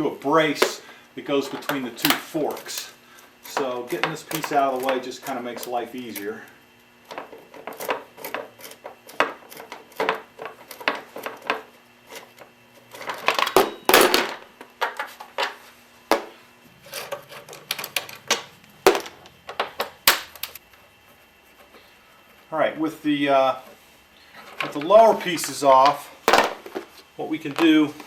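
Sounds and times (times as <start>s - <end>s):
hand tools clicking and clanking: 0.4s - 6.5s, 7.1s - 20.6s, 24.3s - 28.0s
metal parts clattering: 3.5s - 5.8s, 12.9s - 15.6s, 16.8s - 20.6s.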